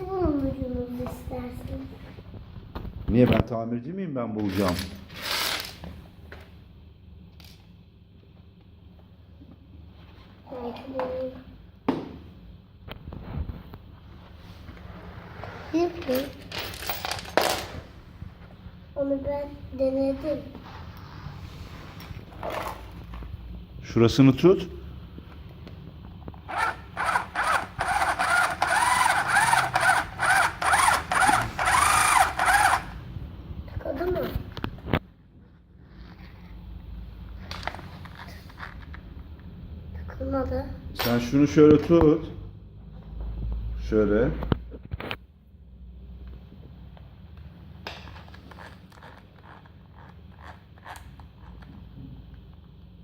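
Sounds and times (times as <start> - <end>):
small drill whirring in pulses: 26.5 - 33.0
hand scraping objects: 26.5 - 33.1.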